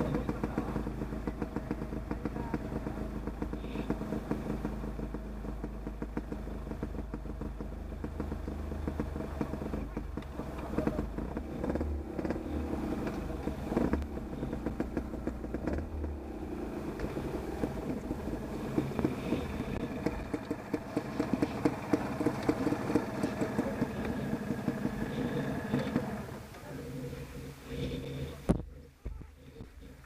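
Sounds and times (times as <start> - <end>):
motorcycle engine running: 0.0 - 30.0
short regular pulses: 0.0 - 30.0.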